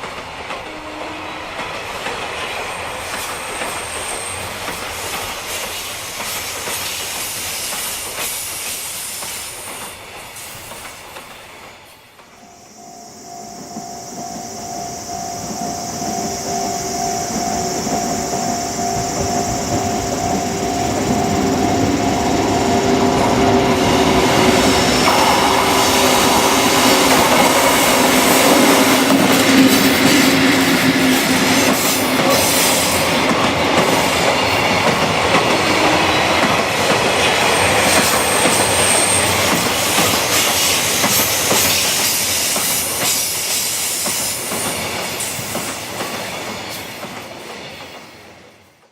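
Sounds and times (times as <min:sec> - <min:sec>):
high wheel squeal: 0:12.5 - 0:33.2.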